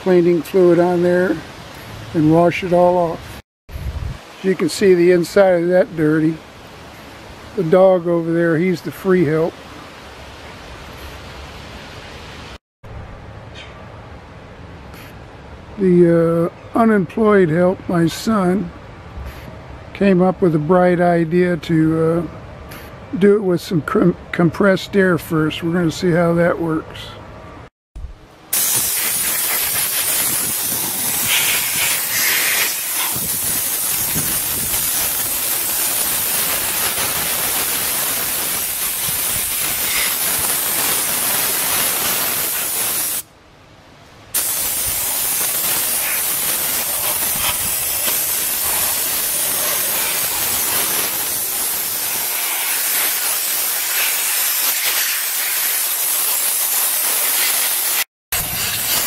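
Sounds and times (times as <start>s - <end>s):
compressed air hissing: 28.5s - 43.3s, 44.3s - 59.0s.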